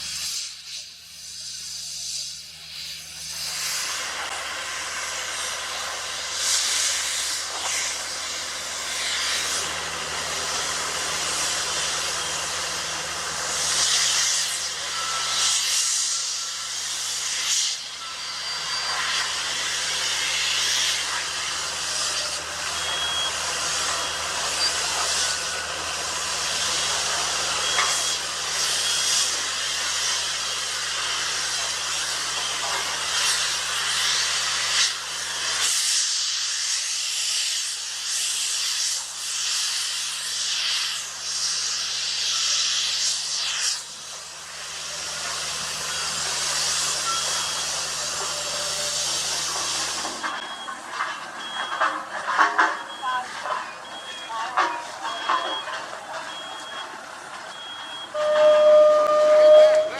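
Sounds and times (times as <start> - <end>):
loud hissing rushing noise: 0.0 - 32.3
diesel engine hum: 0.0 - 35.7, 41.0 - 59.9.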